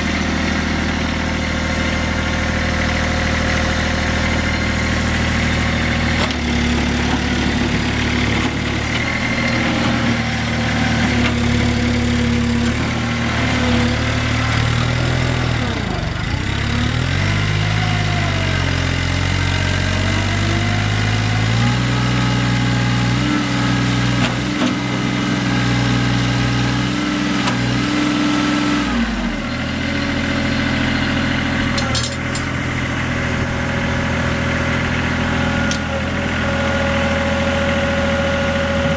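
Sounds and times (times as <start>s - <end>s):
diesel engine idling: 28.8s - 38.9s.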